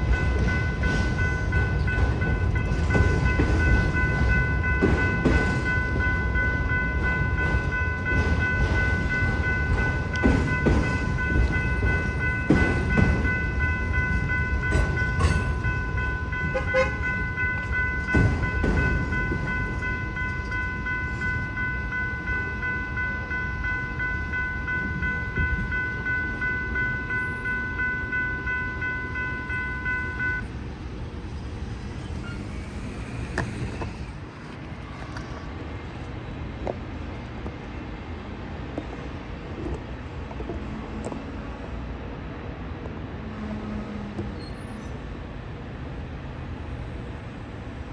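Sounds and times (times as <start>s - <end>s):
crossing warning bell ringing: 0.0s - 30.8s
freight train rumbling: 0.0s - 47.9s.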